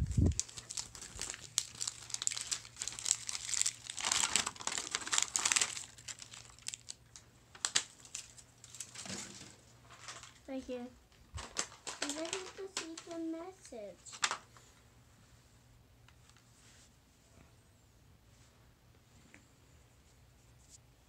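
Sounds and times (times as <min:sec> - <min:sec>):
plastic wrappers crinkling: 0:00.0 - 0:10.5, 0:11.4 - 0:13.4.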